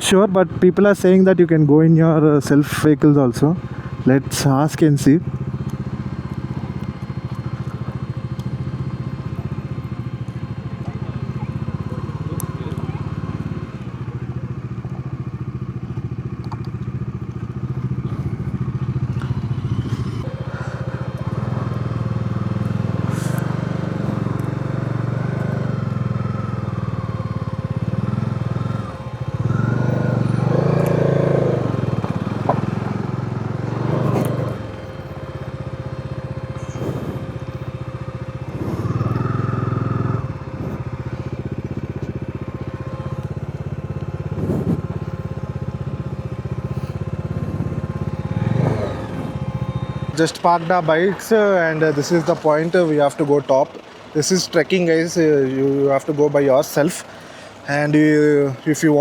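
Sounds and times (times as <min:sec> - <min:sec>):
motorcycle engine running: 0:00.0 - 0:59.0.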